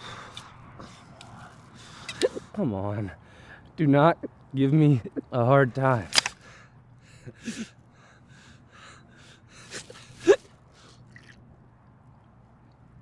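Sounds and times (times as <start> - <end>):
person hiccuping: 2.1 - 2.6.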